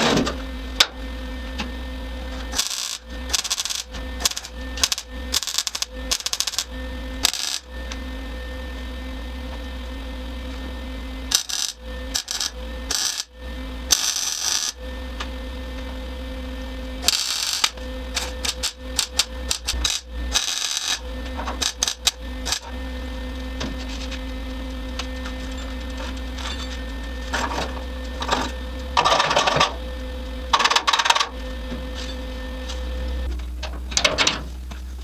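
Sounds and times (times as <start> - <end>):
steady electrical hum: 0.0 - 35.0
welding crackling bursts: 2.4 - 7.7, 11.3 - 13.3, 13.9 - 14.8, 17.0 - 21.0, 21.6 - 27.4.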